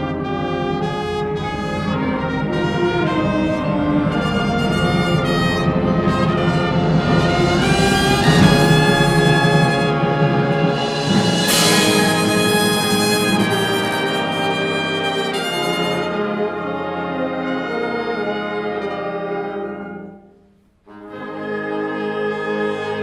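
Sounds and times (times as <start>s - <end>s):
concert band playing brass chords: 0.0s - 17.8s.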